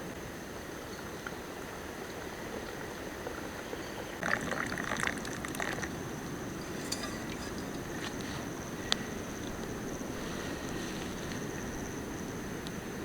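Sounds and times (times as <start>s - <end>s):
liquid bubbling in a pot: 4.2s - 12.1s
light metallic clinks: 6.5s - 9.9s.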